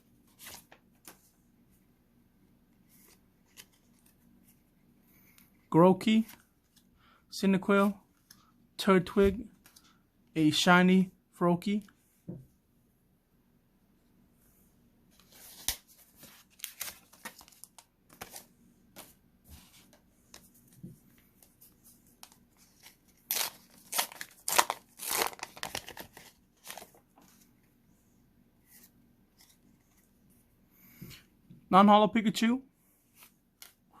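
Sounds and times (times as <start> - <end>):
card wrapper tearing and crinkling: 15.5 - 18.4, 22.2 - 27.0.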